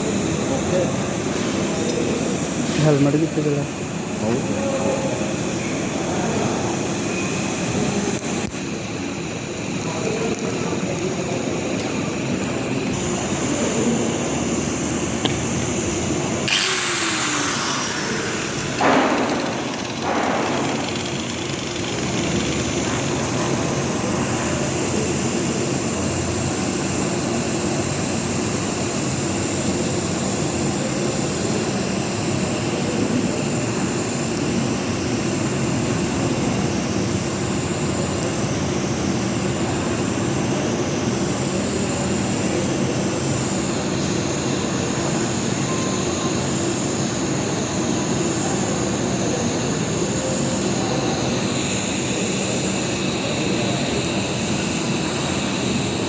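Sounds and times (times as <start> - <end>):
engine running: 9.8 - 23.8
loud hissing bursts: 16.4 - 21.4.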